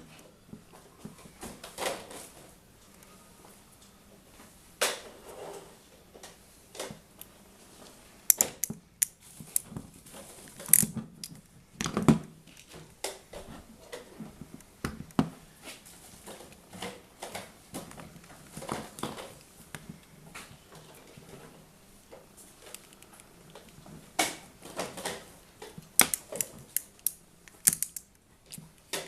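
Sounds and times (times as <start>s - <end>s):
hand tools clicking and knocking: 26.0s - 29.0s.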